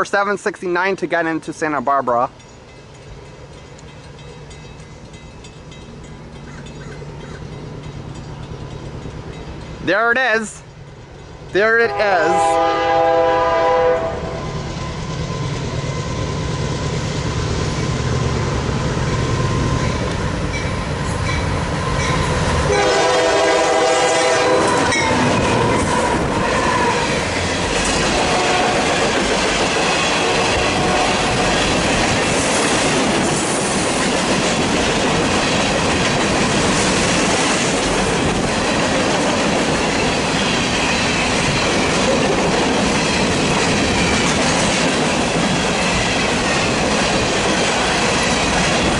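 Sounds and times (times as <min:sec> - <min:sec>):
diesel locomotives passing: 0:00.0 - 0:48.9
train clattering over rail joints: 0:01.5 - 0:11.8, 0:19.2 - 0:48.9
train horn chord: 0:11.8 - 0:14.6, 0:22.7 - 0:25.1, 0:28.1 - 0:29.0, 0:30.2 - 0:31.4.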